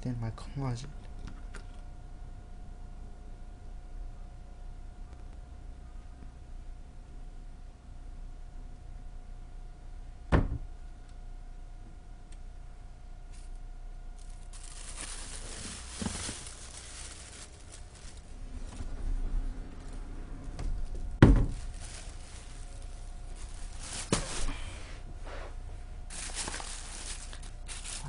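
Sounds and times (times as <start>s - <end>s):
hands rustling and crinkling objects: 14.2s - 18.8s, 21.5s - 24.8s, 26.0s - 28.0s.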